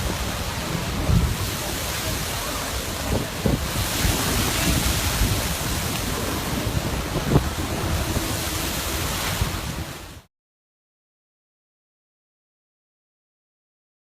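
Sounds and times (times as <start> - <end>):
wind buffeting microphone: 0.0 - 10.2.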